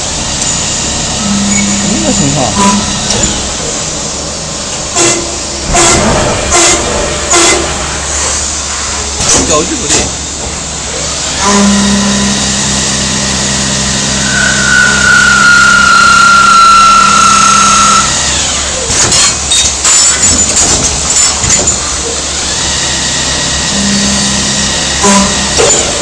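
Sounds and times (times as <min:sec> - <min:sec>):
high whine: 0:00.0 - 0:06.9, 0:11.3 - 0:18.8
machine tool hum: 0:00.0 - 0:09.2, 0:10.1 - 0:19.4, 0:22.0 - 0:26.0.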